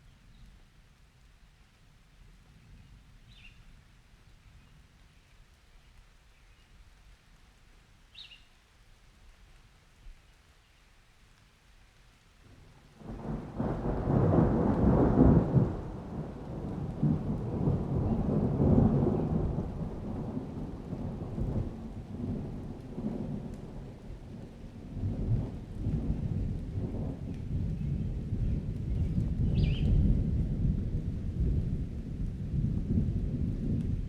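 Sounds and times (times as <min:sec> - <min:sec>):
steady rain: 0:00.0 - 0:34.0
thunder rumbling: 0:13.0 - 0:34.0.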